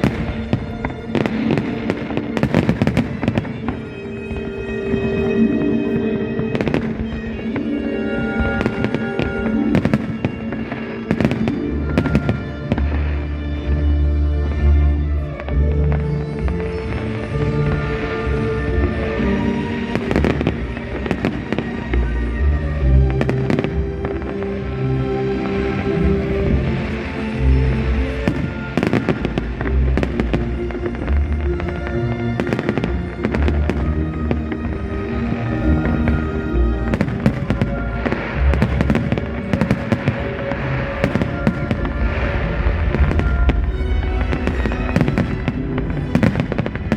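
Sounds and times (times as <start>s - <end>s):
fireworks bangs: 0.0s - 13.2s, 17.6s - 24.7s, 25.3s - 46.9s
music with held notes: 0.0s - 46.9s
deep bass in music: 12.8s - 21.1s, 21.8s - 39.6s.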